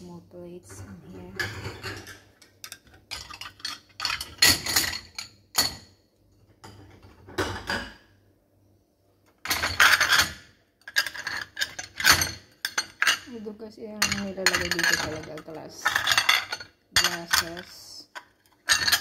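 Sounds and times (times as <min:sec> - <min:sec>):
ceramic plates clattering: 0:01.0 - 0:05.9, 0:06.6 - 0:08.0, 0:09.5 - 0:13.3, 0:14.0 - 0:19.0.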